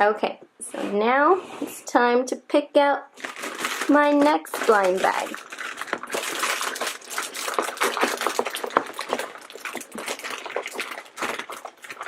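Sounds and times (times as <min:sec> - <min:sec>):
rustling through plastic packages: 0:03.1 - 0:12.0.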